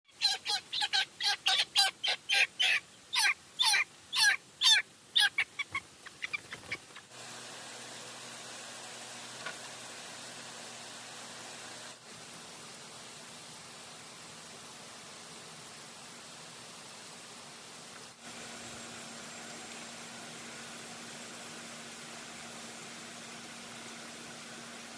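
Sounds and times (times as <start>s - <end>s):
chickens squawking: 0.1s - 7.1s.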